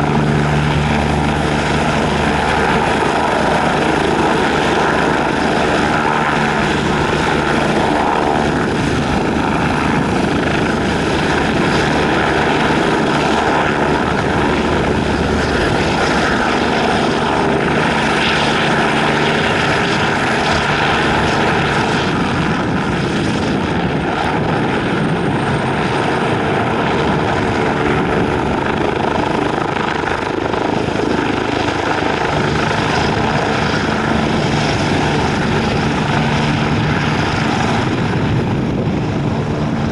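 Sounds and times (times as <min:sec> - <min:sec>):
helicopter turbine whine and rotor: 0:00.0 - 0:39.9.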